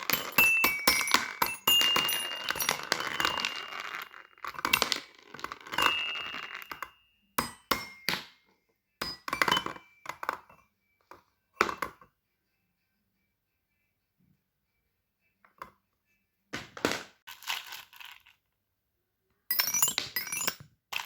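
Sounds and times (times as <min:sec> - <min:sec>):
fidget toys clattering: 0:00.0 - 0:06.9.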